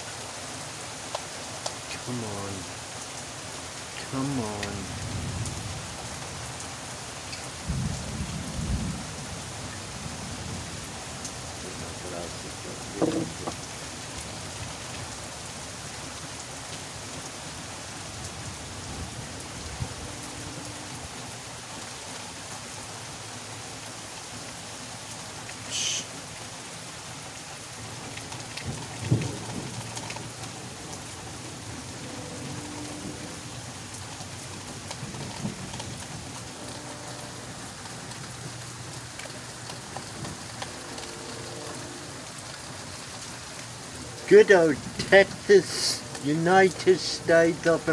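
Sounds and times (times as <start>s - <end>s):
steady rain falling: 0.0s - 47.9s
thunder rumbling: 7.6s - 10.8s.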